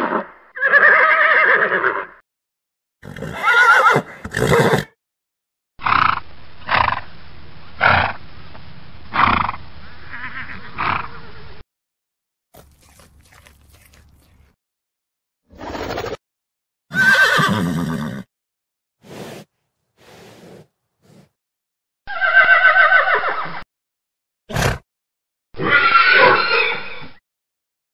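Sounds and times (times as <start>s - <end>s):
horse neighing: 0.0s - 2.2s, 3.0s - 4.9s, 16.9s - 18.3s, 22.1s - 23.5s.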